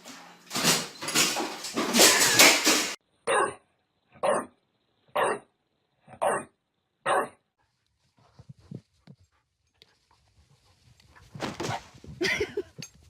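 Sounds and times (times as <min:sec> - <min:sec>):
dog barking: 0:03.3 - 0:03.6, 0:04.2 - 0:04.6, 0:05.2 - 0:05.5, 0:06.1 - 0:07.4.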